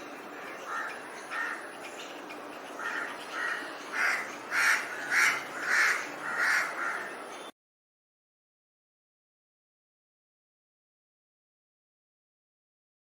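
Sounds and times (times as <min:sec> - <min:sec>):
crows cawing: 0:00.4 - 0:01.7, 0:02.8 - 0:07.2.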